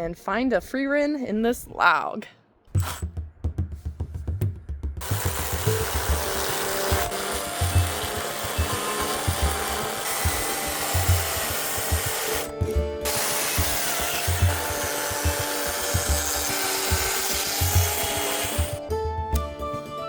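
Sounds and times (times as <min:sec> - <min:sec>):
background music with steady beat: 0:02.7 - 0:20.0
chainsaw cutting wood: 0:02.8 - 0:03.1, 0:05.0 - 0:18.9.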